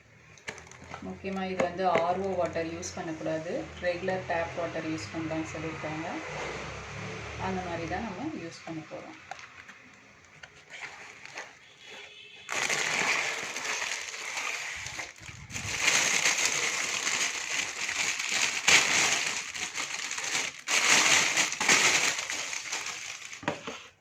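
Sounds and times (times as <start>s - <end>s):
packaging crinkling: 9.1s - 24.0s.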